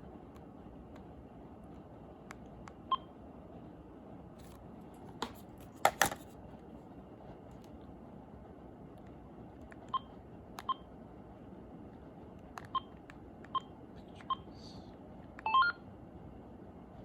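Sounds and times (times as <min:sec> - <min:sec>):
phone key-press beeps: 0:15.4 - 0:15.8.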